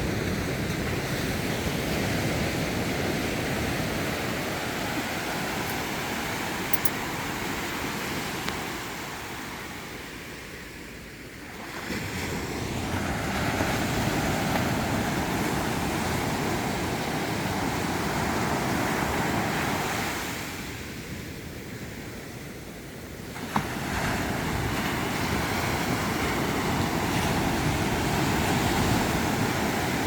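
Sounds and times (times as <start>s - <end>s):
sea surf washing onto beach: 0.0s - 10.7s, 23.2s - 30.0s.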